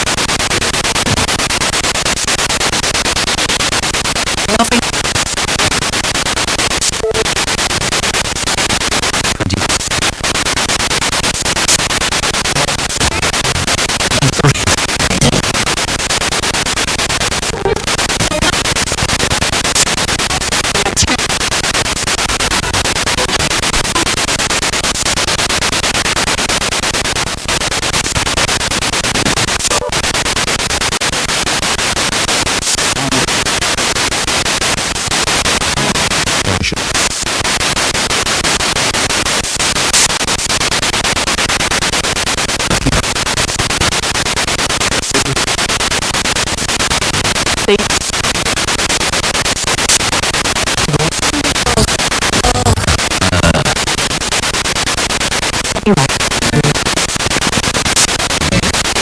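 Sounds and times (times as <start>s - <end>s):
radio static: 0.0s - 59.0s
snatches of radio voice: 1.0s - 1.4s, 4.4s - 6.0s, 6.6s - 8.0s, 9.2s - 10.4s, 11.2s - 16.0s, 17.2s - 24.2s, 29.1s - 30.0s, 32.5s - 33.5s, 35.5s - 37.5s, 42.6s - 43.9s, 44.9s - 45.6s, 47.1s - 48.7s, 49.4s - 54.4s, 55.5s - 59.0s
radio music fragments: 4.4s - 8.0s, 8.8s - 10.4s, 11.0s - 25.1s, 29.0s - 30.2s, 32.6s - 33.6s, 35.4s - 37.6s, 42.6s - 43.7s, 44.8s - 59.0s.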